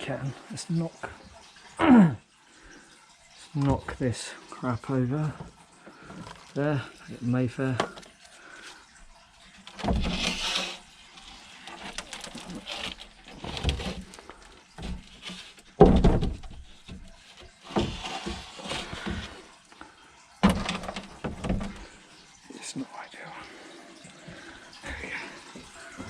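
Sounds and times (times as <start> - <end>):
scraping rustles: 9.6 - 19.5
handling knocks and bumps: 14.8 - 19.4, 20.4 - 21.9.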